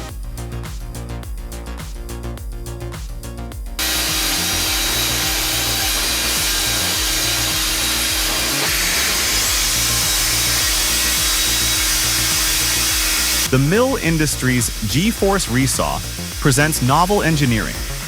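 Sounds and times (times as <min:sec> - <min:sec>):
band saw cutting wood: 0:03.8 - 0:18.0.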